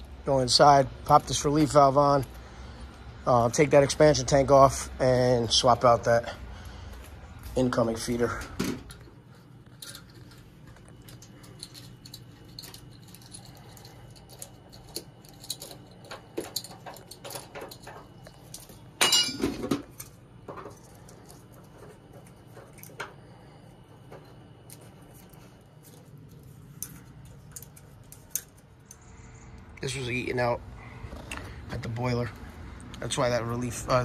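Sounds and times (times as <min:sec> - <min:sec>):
metal parts clinking: 0:09.7 - 0:23.2, 0:24.6 - 0:29.0.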